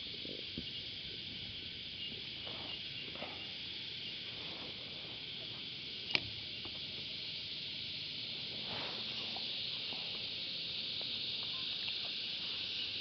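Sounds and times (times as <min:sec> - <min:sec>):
cicadas chorus: 0:00.0 - 0:13.0
sharp click: 0:06.1 - 0:06.3.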